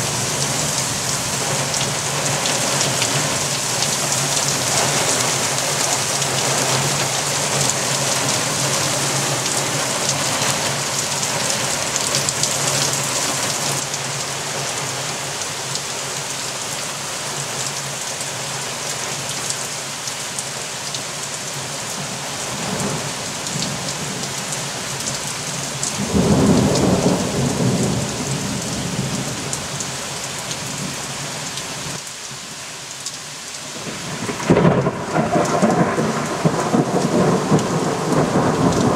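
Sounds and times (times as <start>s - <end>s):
heavy rain falling: 0.0s - 38.9s
thunder rumbling: 25.9s - 29.5s, 33.8s - 38.9s.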